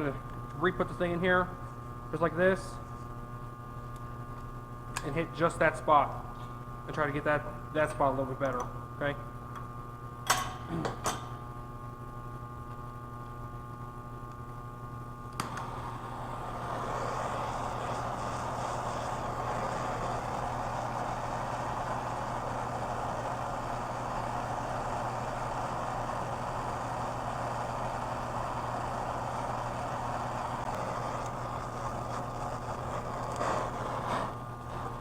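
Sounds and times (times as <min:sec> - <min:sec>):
gas torch flame hissing: 0:15.3 - 0:35.0
torch ignition click: 0:15.3 - 0:35.0.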